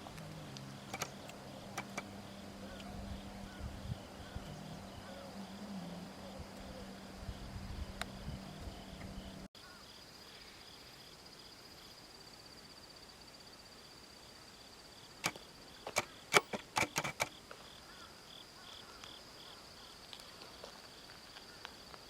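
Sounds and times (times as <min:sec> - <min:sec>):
low steady hum: 0:00.0 - 0:09.5
insect pulsing chirp: 0:00.0 - 0:12.2
insect high steady trill: 0:00.0 - 0:21.9.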